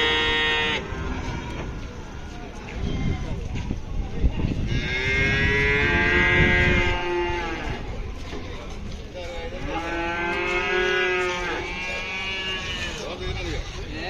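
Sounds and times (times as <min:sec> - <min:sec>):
cattle mooing: 0:00.0 - 0:02.4.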